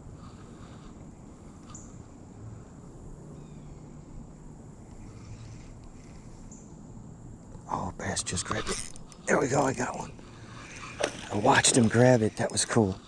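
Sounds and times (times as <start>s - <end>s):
faint chirps: 4.9s - 6.8s.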